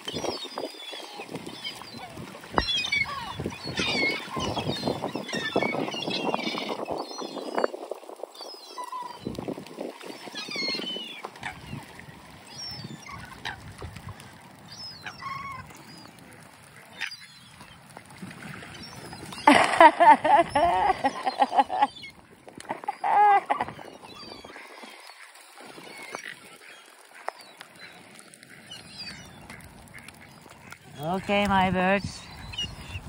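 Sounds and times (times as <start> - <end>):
swans honking: 19.2 - 33.0
ducks quacking: 19.4 - 33.0.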